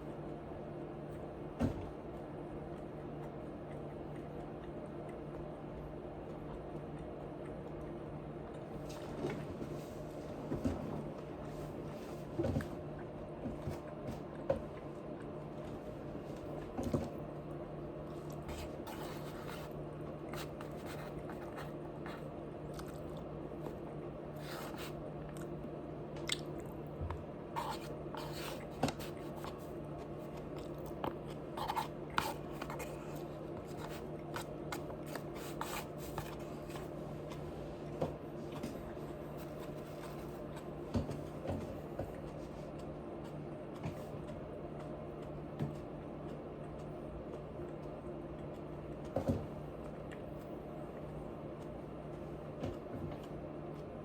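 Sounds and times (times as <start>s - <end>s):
low background hum: 0.0s - 54.0s
chewing and biting: 2.5s - 9.0s, 19.6s - 24.2s, 25.1s - 36.6s.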